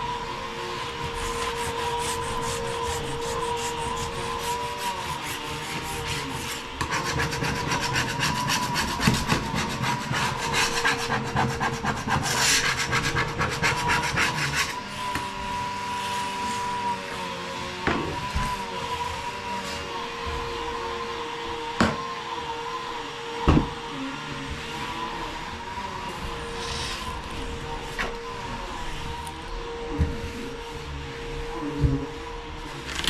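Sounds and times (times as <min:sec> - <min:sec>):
tool scraping a hard surface: 0:01.1 - 0:15.3.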